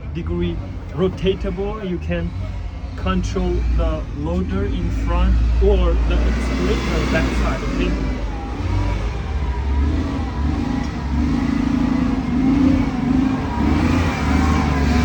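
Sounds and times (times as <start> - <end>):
engine running steadily: 0.0 - 15.0.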